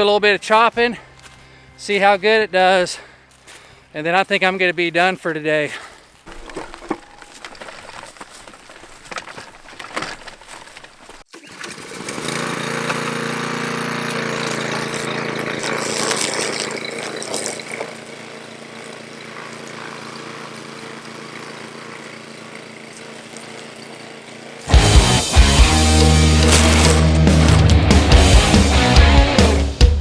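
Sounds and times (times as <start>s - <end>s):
mower engine running: 6.3s - 10.6s, 11.4s - 29.8s.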